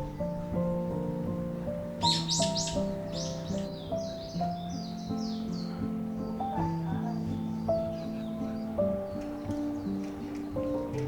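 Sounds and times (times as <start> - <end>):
soft background music: 0.0 - 11.0
bird chirping: 2.0 - 11.0.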